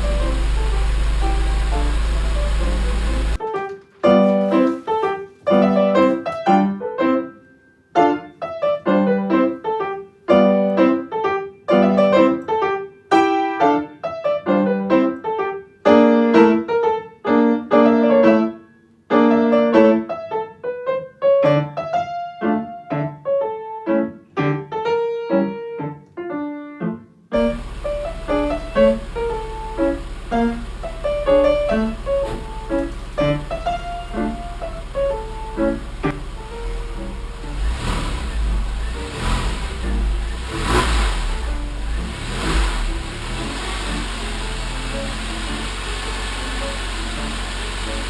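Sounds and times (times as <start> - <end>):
steady rushing noise: 0.0 - 3.4, 27.4 - 48.0
solo piano: 0.0 - 48.0.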